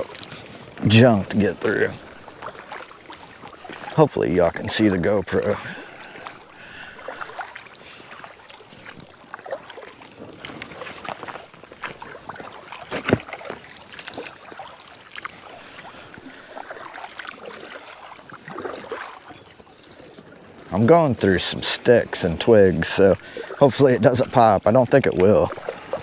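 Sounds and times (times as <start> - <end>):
paddle splashing water: 0.0 - 26.0.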